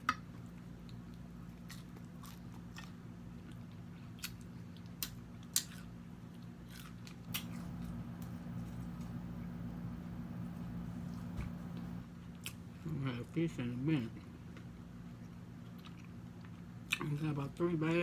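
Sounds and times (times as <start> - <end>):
person chewing food: 6.7 - 12.6, 15.6 - 16.6
steady low hum: 7.3 - 12.0.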